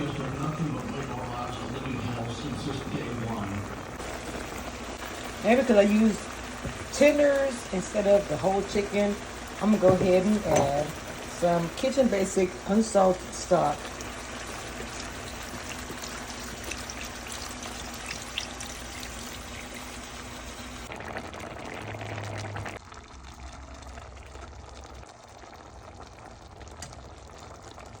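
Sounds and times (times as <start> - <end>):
liquid pouring into a pot: 0.0 - 28.0.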